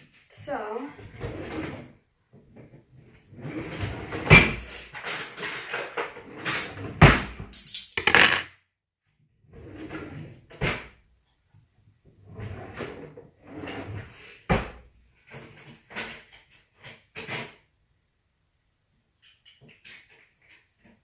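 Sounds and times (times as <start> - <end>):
utensils clattering in drawer: 3.7 - 6.8, 7.6 - 8.4.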